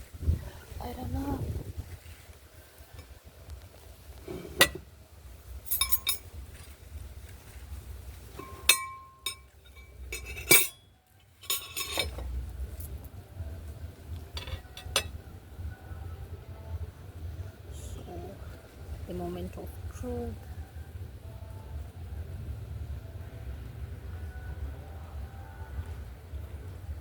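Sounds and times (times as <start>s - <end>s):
tableware clinking: 4.3s - 4.9s, 5.7s - 6.7s, 8.3s - 12.3s, 14.3s - 15.2s.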